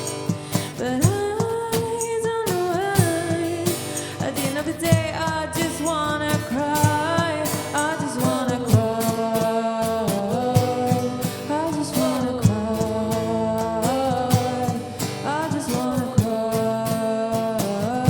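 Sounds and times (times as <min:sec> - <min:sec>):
drum beat: 0:00.0 - 0:11.2.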